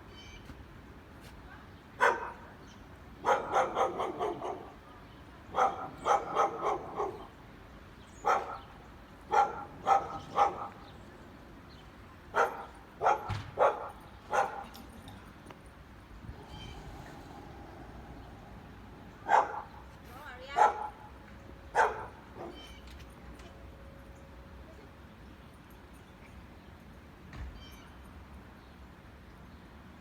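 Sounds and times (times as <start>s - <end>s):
dog barking: 2.0s - 2.5s, 3.2s - 4.8s, 5.5s - 7.3s, 8.2s - 8.7s, 9.3s - 10.8s, 12.4s - 14.7s, 19.1s - 19.9s, 20.6s - 21.1s, 21.7s - 22.7s.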